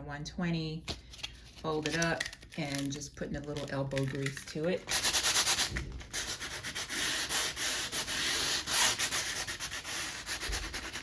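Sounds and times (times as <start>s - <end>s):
sandpaper scratching on canvas: 4.9s - 11.0s.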